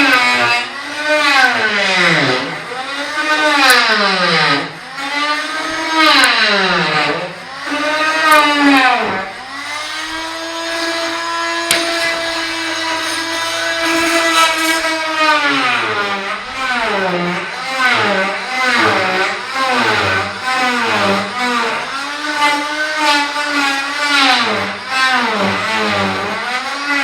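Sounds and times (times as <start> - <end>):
oscillating multi-tool cutting: 0.0 - 27.0
sharp click: 11.7 - 12.2.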